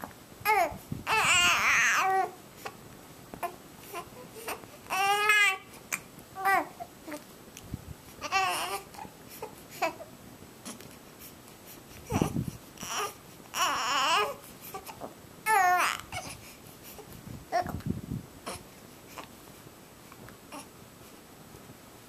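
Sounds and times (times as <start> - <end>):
baby babbling and squealing: 0.5 - 2.4, 4.0 - 5.6, 6.4 - 7.2, 15.5 - 16.3
baby cooing: 0.5 - 2.4, 3.4 - 7.2, 8.2 - 10.1, 12.1 - 16.4.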